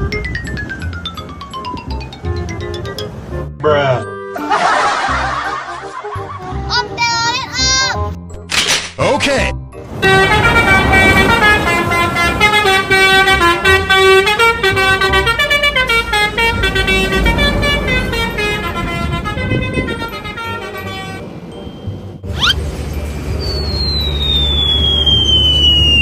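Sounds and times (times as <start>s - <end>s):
multi-tone musical air horn: 10.0s - 21.3s.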